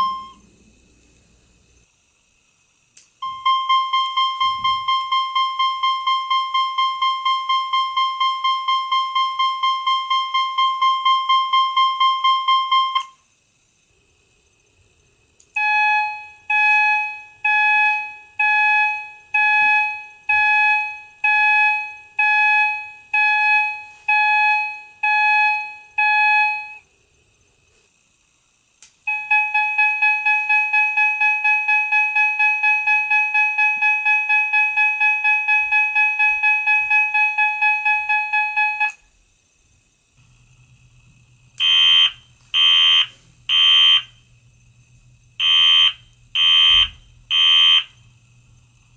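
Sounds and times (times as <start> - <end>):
fire alarm chime tone: 0.0 - 0.4, 3.2 - 13.2, 15.6 - 26.8, 29.1 - 39.0, 41.6 - 44.1, 45.4 - 48.0.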